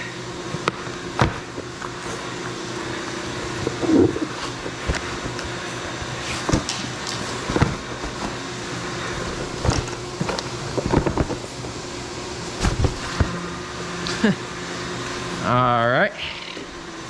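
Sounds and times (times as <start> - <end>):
cnc mill humming: 0.0 - 17.0.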